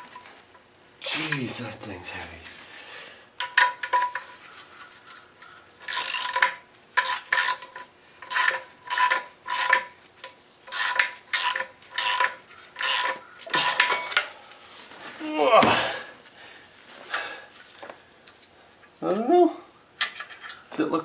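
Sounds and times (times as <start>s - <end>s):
ratchet wrench ratcheting: 5.8s - 9.9s, 10.7s - 13.9s.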